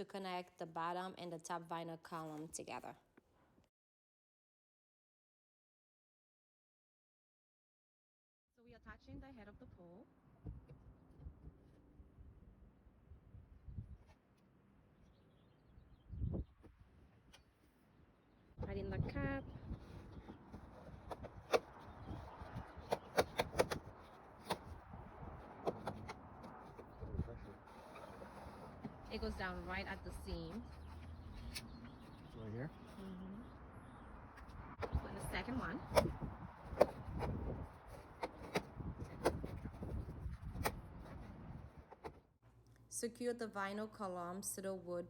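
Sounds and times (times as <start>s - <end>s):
vinyl pieces clicking and knocking: 22.8s - 24.7s, 25.5s - 26.9s.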